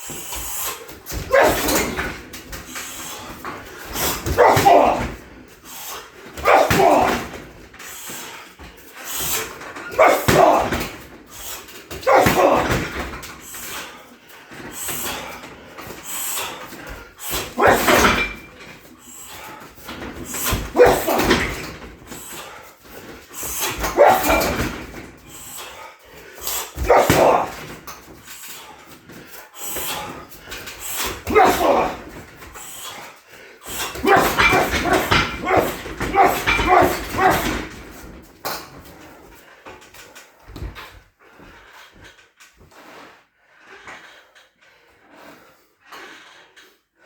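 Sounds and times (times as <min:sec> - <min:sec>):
punches thudding on heavy bag: 0:00.1 - 0:05.3, 0:06.3 - 0:07.6, 0:09.8 - 0:13.7, 0:17.3 - 0:18.5, 0:19.4 - 0:22.6, 0:23.4 - 0:25.2, 0:26.8 - 0:28.1, 0:30.9 - 0:32.4, 0:33.7 - 0:38.3
person grunting loudly: 0:01.2 - 0:02.0, 0:04.2 - 0:05.2, 0:06.4 - 0:07.4, 0:10.0 - 0:10.9, 0:12.0 - 0:12.8, 0:17.6 - 0:18.1, 0:20.8 - 0:21.5, 0:24.0 - 0:24.6, 0:26.8 - 0:27.7, 0:31.3 - 0:32.1, 0:33.9 - 0:37.7.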